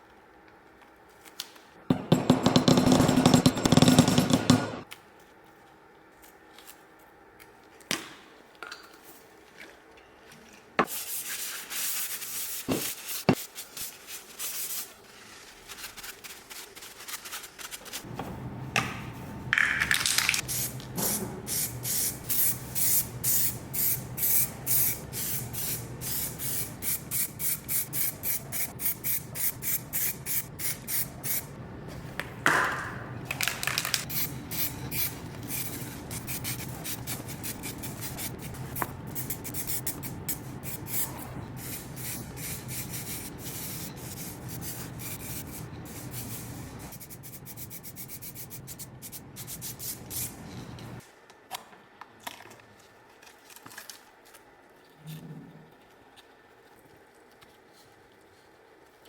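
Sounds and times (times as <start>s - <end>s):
steady low hum: 34.0s - 51.0s.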